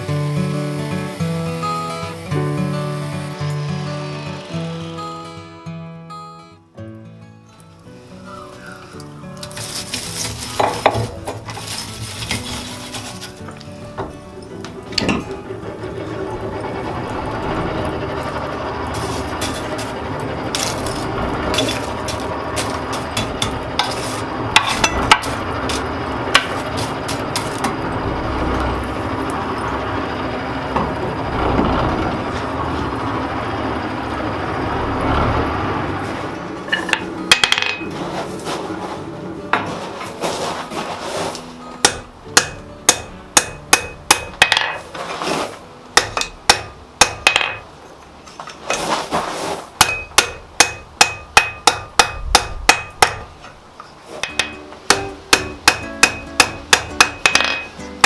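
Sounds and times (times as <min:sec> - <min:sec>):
hammer striking steel on anvil: 0:20.6 - 0:27.9, 0:41.8 - 0:44.8, 0:46.0 - 0:47.6, 0:49.8 - 0:53.4, 0:54.2 - 0:57.9.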